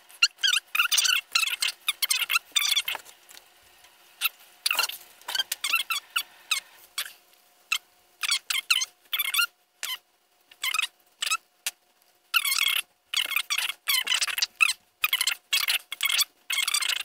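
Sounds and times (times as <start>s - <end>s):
high-pitched squeaks: 0.2s - 3.0s, 4.2s - 10.0s.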